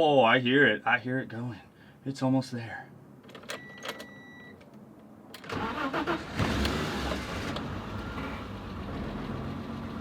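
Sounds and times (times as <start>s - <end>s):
car engine starting and idling: 5.4s - 10.0s.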